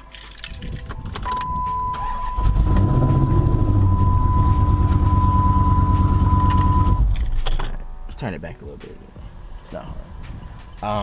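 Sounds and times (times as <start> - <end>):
car engine starting and idling: 1.2 - 8.0
high warning chime tone: 1.3 - 7.1.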